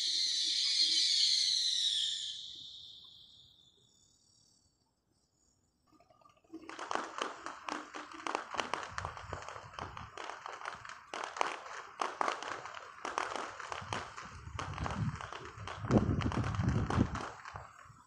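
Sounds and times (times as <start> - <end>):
firecrackers popping: 0.0 - 2.8, 6.5 - 18.0.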